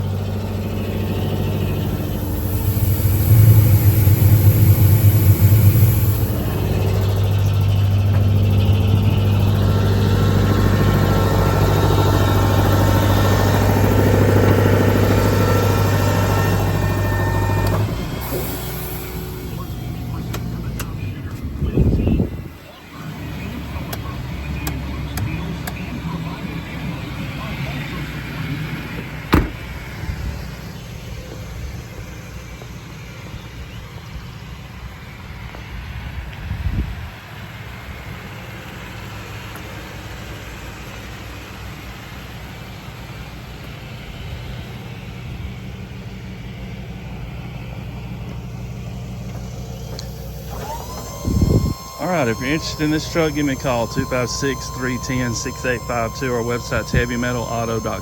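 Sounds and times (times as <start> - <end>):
strong low hum: 0.0 - 28.5, 47.1 - 58.0
truck engine running: 0.0 - 58.0
loud thump: 29.3 - 29.7.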